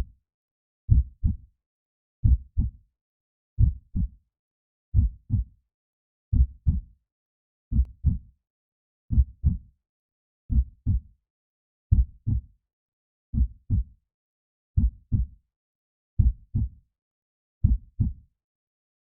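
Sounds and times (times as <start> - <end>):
heartbeat thumps: 5.0 - 5.4, 11.9 - 12.4, 17.6 - 18.1.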